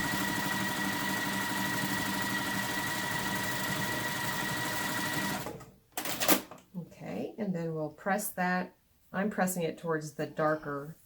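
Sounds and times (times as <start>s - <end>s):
sewing machine running: 0.0s - 6.4s.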